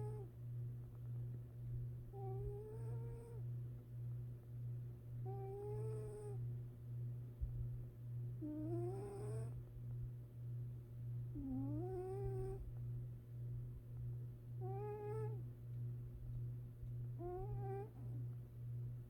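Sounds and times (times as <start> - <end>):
cat snoring softly: 0.0 - 0.3, 2.1 - 3.4, 5.2 - 6.5, 8.4 - 9.6, 11.3 - 12.6, 14.6 - 15.4, 17.2 - 18.2
steady low hum: 0.0 - 19.0.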